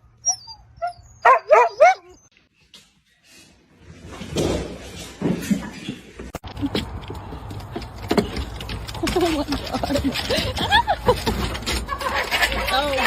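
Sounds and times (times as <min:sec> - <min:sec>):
dog yipping: 0:00.2 - 0:02.3.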